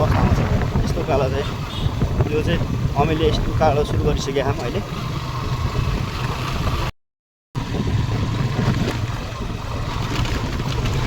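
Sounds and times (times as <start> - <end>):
vehicle engine under load: 7.6 - 11.0.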